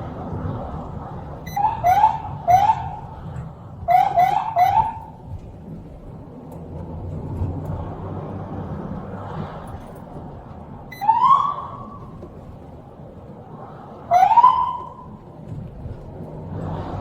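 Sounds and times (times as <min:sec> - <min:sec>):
low vehicle rumble: 0:00.0 - 0:17.0
police siren blips: 0:01.4 - 0:03.1, 0:03.9 - 0:05.2, 0:10.9 - 0:12.2, 0:14.1 - 0:15.2.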